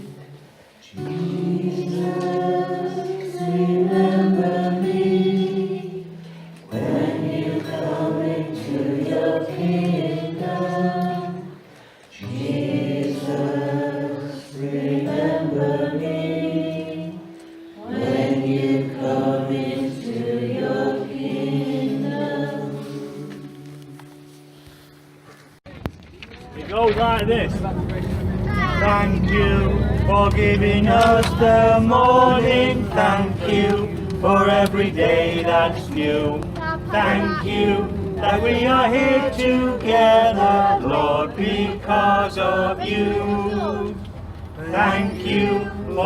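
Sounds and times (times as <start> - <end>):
choir singing: 0.0 - 23.5, 28.3 - 46.0.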